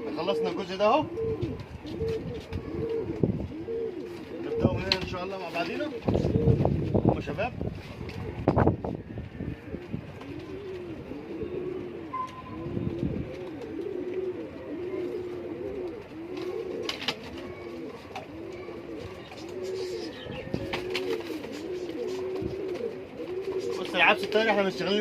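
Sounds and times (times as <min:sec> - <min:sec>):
pigeons cooing: 0:00.0 - 0:25.0.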